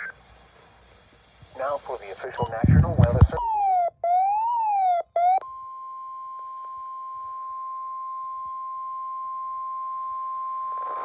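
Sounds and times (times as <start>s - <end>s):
high pure warning beep: 2.3s - 11.0s
rising and falling sweep tone: 2.7s - 5.4s.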